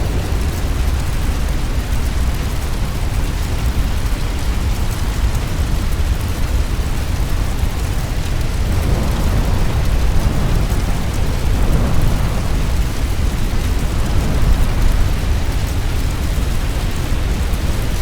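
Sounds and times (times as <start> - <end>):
fire roaring: 0.0 - 18.0.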